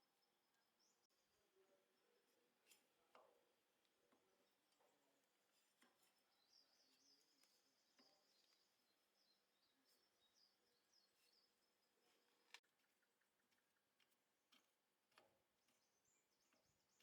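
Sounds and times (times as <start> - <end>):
faint high chirping: 4.2 - 13.8.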